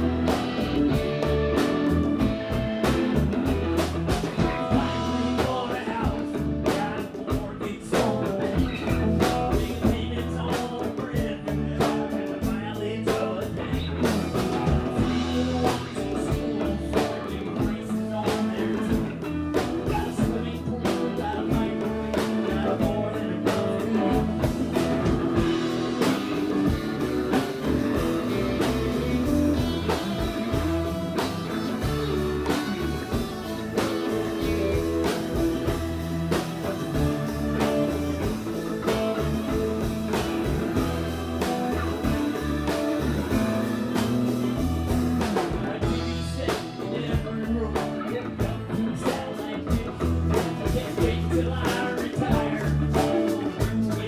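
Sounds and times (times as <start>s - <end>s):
rock band instrumental: 0.0s - 54.0s.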